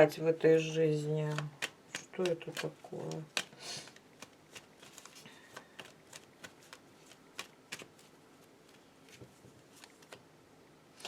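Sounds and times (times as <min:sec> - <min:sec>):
cards clicking on a table: 0:01.3 - 0:08.0.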